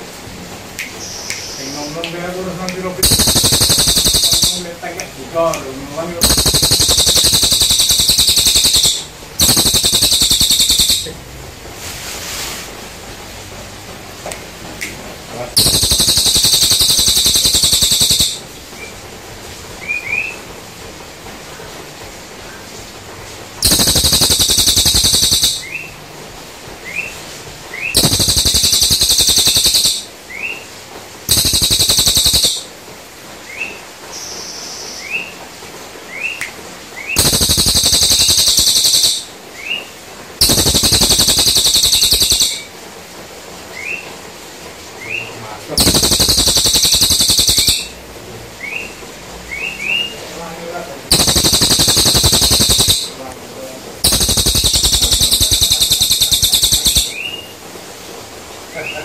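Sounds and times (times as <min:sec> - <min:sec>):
songbird rising chirps: 0:03.0 - 0:04.8, 0:06.2 - 0:11.2, 0:15.6 - 0:19.0, 0:23.6 - 0:26.0, 0:26.8 - 0:30.7, 0:31.3 - 0:32.7, 0:37.0 - 0:42.7, 0:45.0 - 0:48.0, 0:51.1 - 0:53.2, 0:54.0 - 0:57.6
songbird rattling trills: 0:03.0 - 0:05.0, 0:06.2 - 0:11.2, 0:15.6 - 0:18.9, 0:23.6 - 0:26.0, 0:27.8 - 0:30.6, 0:31.2 - 0:32.8, 0:37.0 - 0:42.7, 0:45.8 - 0:48.0, 0:51.1 - 0:53.2, 0:54.0 - 0:57.5.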